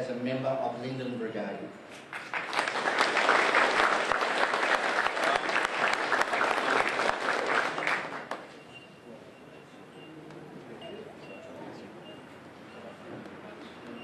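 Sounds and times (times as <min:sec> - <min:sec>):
audience applauding: 0:02.1 - 0:08.5.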